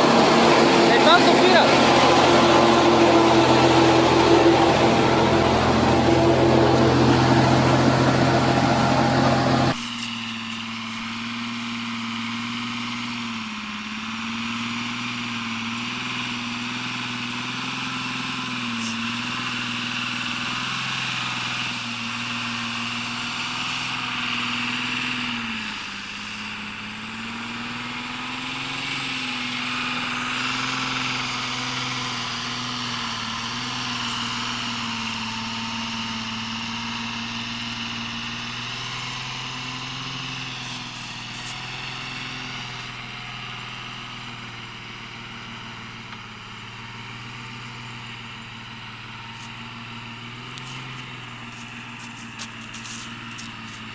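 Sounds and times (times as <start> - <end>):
heavy vehicle engine running: 0.0 - 53.9.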